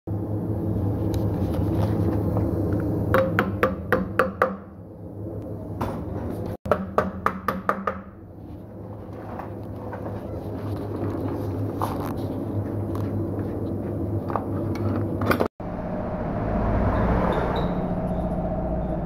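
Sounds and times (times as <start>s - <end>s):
steady machine hum: 0.1s - 3.2s
hammer strikes: 6.7s - 8.2s.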